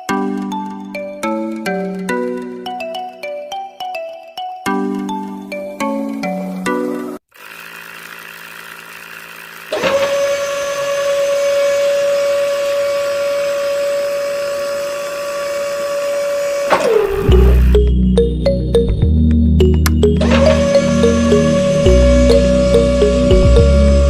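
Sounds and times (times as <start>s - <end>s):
small motor high-pitched whine: 7.2s - 17.8s, 20.1s - 24.0s.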